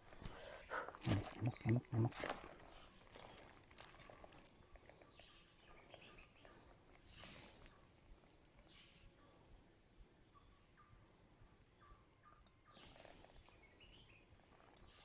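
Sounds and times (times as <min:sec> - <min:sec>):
soft rustles: 0:00.0 - 0:05.2.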